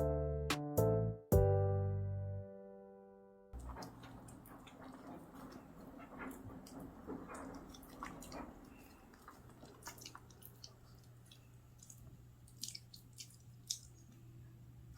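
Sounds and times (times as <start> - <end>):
pet snack being chewed: 3.6 - 14.3.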